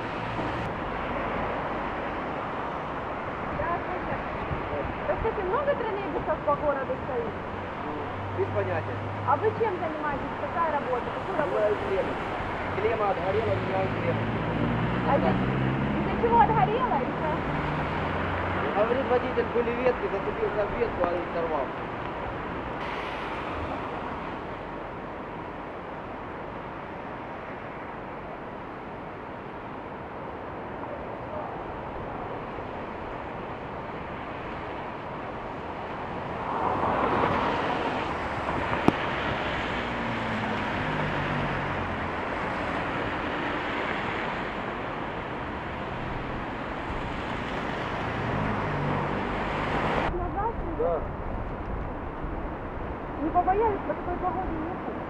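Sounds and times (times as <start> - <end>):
strong wind buffeting microphone: 49.6 - 55.0.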